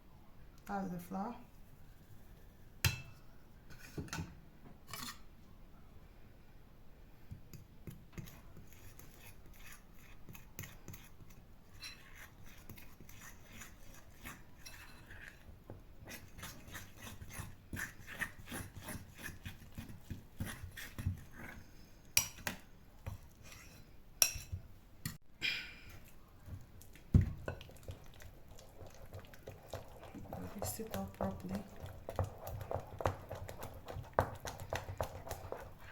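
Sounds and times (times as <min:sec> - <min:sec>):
utensil stirring batter in bowl: 0:07.4 - 0:25.2, 0:25.9 - 0:35.9.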